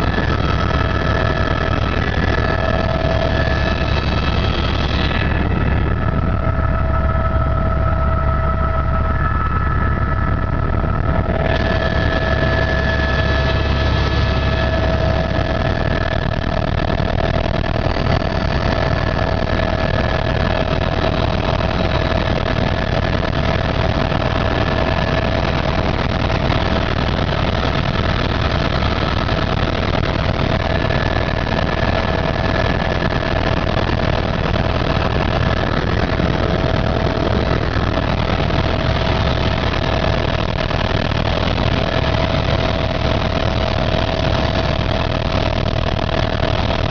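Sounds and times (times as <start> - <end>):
helicopter engine and rotor: 0.0 - 46.9.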